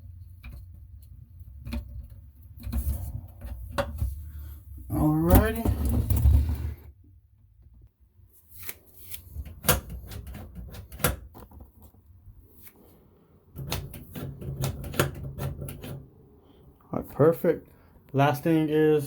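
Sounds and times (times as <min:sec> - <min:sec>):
metal drain parts clicking: 0:00.2 - 0:04.2, 0:13.5 - 0:16.1.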